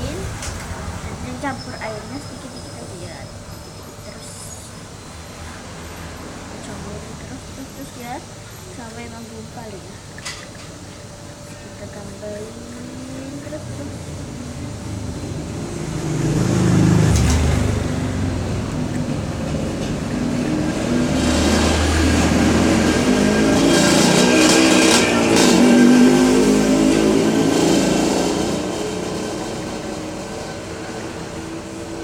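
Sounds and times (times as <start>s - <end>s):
motor engine revving: 12.4s - 32.0s.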